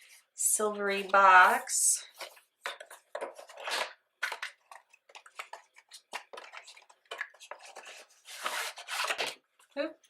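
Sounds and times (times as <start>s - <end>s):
packaging clicks and rustles: 2.2s - 9.4s.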